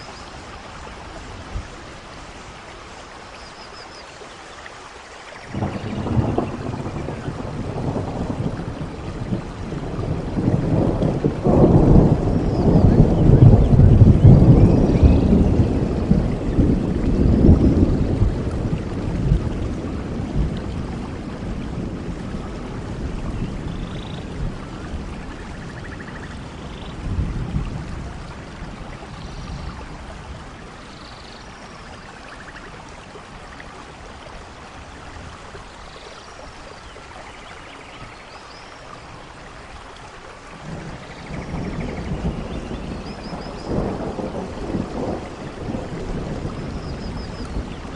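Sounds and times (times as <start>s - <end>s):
rain hiss: 0.0s - 47.9s
rolling thunder: 5.5s - 31.0s, 40.5s - 47.9s.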